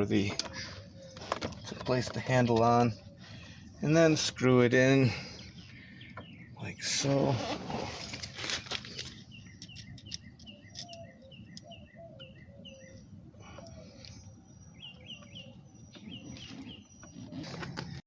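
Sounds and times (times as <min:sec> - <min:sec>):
small bird chirping: 0:08.4 - 0:18.0.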